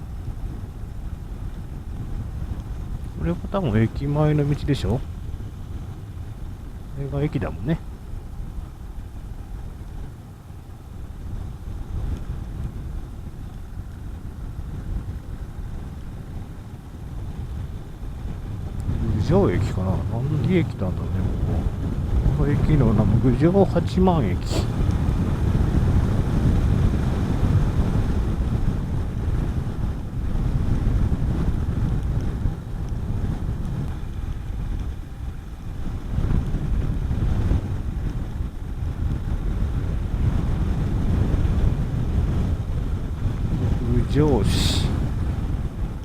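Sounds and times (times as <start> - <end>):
wind noise on microphone: 0.0 - 46.0.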